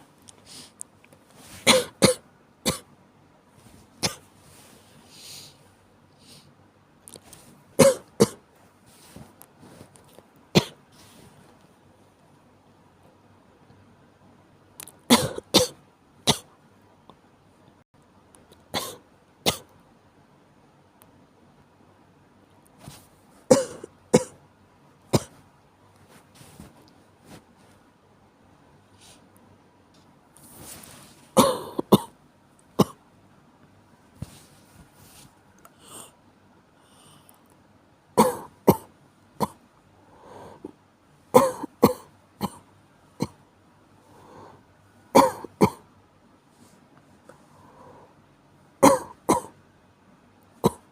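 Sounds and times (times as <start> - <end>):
person coughing: 1.6 - 2.9, 4.0 - 4.3, 7.8 - 8.4, 10.6 - 10.8, 15.1 - 16.5, 18.8 - 19.7, 23.5 - 24.4, 31.4 - 32.1, 38.2 - 39.6, 41.4 - 42.6, 45.2 - 45.8, 48.8 - 49.6, 50.6 - 50.9.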